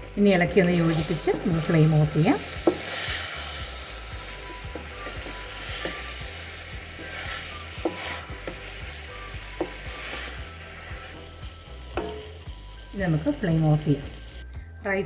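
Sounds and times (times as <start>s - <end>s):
chicken sizzling in a pan: 0.7s - 14.4s
spatula scraping a pan: 0.8s - 11.2s.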